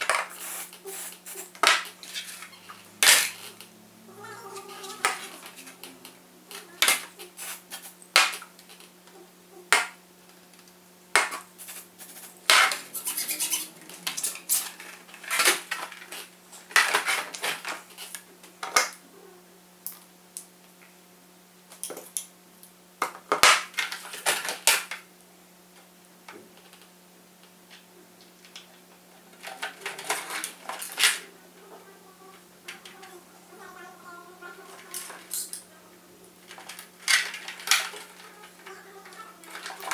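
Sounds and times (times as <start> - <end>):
scraping and rattling parts: 0.0 - 8.9, 11.6 - 18.2, 23.8 - 25.0, 28.5 - 39.9
plastic parts clicking and tapping: 4.6 - 8.9, 26.3 - 33.8, 34.7 - 39.9.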